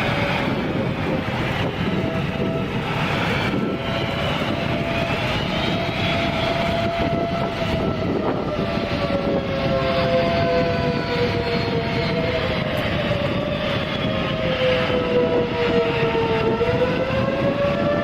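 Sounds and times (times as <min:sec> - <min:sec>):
jet engines roaring with whine: 0:00.0 - 0:18.0.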